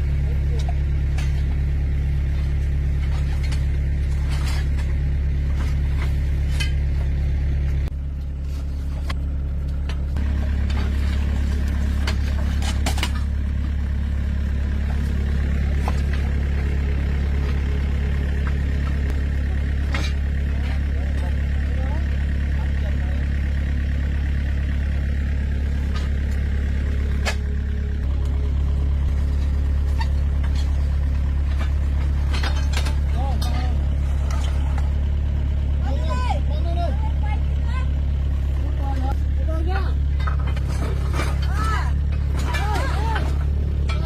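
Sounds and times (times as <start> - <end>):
large vehicle engine running: 0.0 - 44.0.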